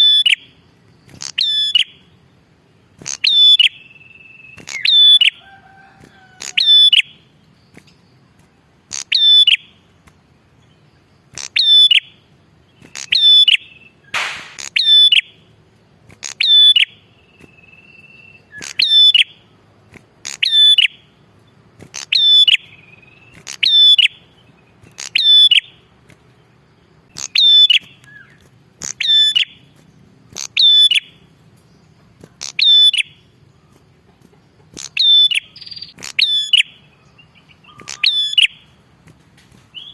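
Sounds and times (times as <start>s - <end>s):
bird singing sharp notes: 3.0s - 5.4s, 10.8s - 15.5s, 16.2s - 19.5s, 21.9s - 25.9s, 27.1s - 31.4s, 34.7s - 38.8s.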